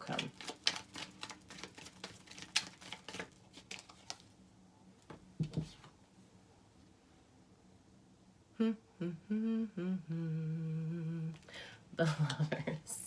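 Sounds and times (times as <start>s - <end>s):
cards being shuffled: 0.1s - 4.3s.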